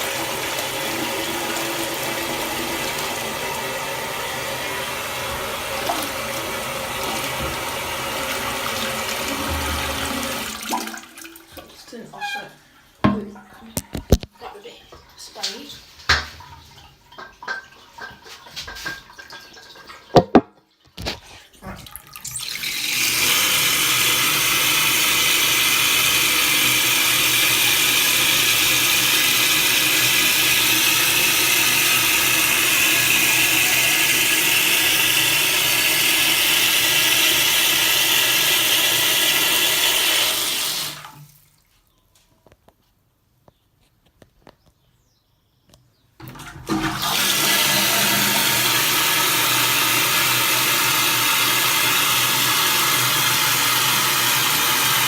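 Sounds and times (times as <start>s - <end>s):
toilet water rushing: 0.0s - 13.9s, 21.8s - 41.6s, 46.2s - 55.0s.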